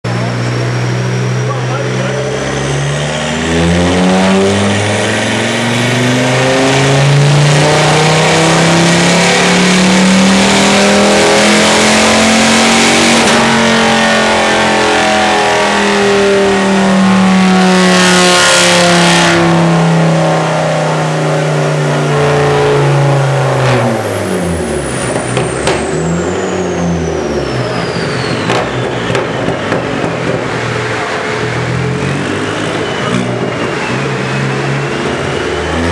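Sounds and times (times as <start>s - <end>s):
high turbo whine: 0.0s - 35.9s
loud car exhaust at full throttle: 0.0s - 35.9s
exhaust pops and crackles: 25.0s - 26.0s, 28.4s - 30.8s.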